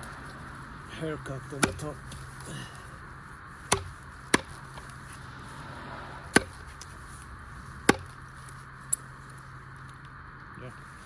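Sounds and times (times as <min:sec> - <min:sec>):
blade chopping into wooden pole: 0:01.5 - 0:02.2, 0:03.6 - 0:05.1, 0:06.3 - 0:06.9, 0:07.8 - 0:08.2.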